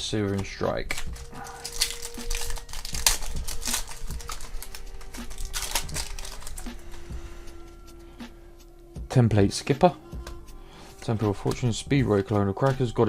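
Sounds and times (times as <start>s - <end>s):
cards being flicked and rustled: 0.3s - 7.1s, 11.0s - 11.8s.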